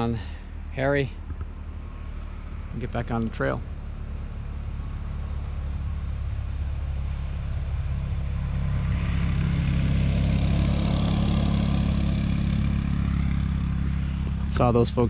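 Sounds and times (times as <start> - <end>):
quad engine approaching: 0.0 - 15.0.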